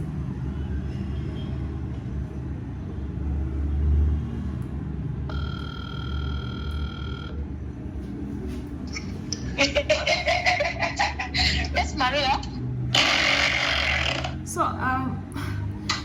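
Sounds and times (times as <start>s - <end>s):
electronic phone tone: 5.3s - 7.4s.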